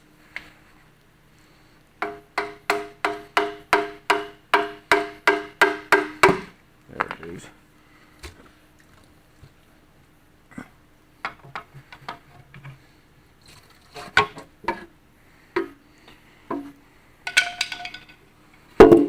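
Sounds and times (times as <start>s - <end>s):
hand tools clinking on metal: 17.3s - 18.2s.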